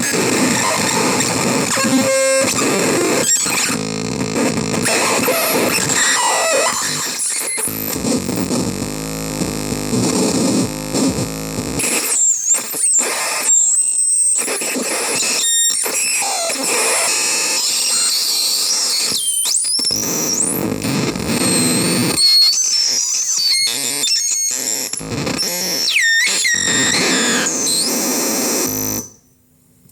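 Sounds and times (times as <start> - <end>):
distorted synth buzz: 0.0 - 12.1, 23.2 - 29.2.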